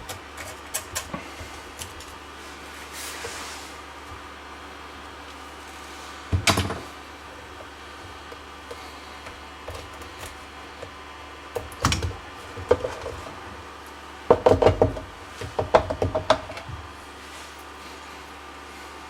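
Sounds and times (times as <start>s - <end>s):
hard objects knocking and clacking: 14.3s - 16.7s.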